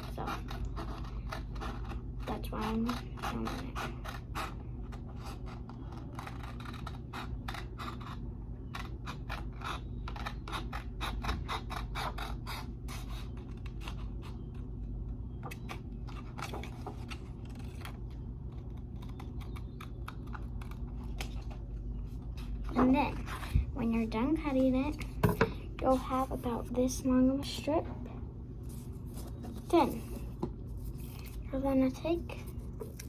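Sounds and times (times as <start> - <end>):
scissors snipping paper: 0.0 - 14.7, 15.5 - 21.6.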